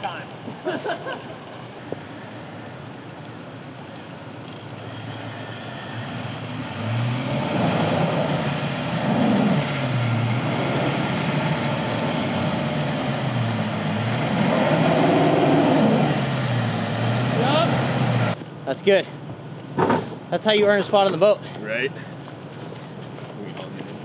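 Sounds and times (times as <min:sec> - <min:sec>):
motor working under load: 0:01.8 - 0:18.4.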